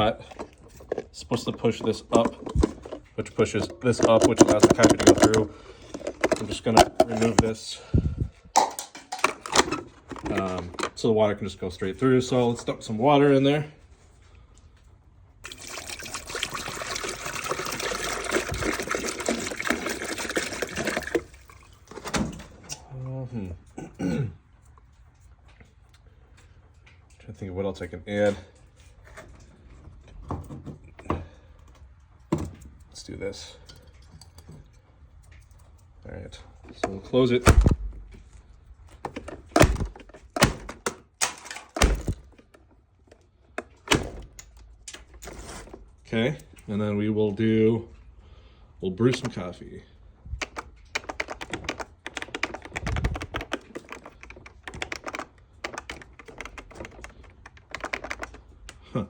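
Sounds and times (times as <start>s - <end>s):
water pouring into reservoir: 15.4s - 21.9s.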